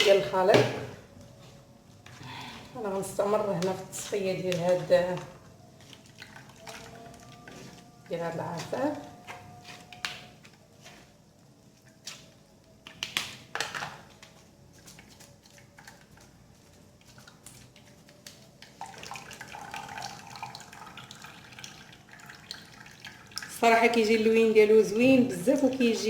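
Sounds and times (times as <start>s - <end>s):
liquid trickling and dripping: 14.8s - 24.1s.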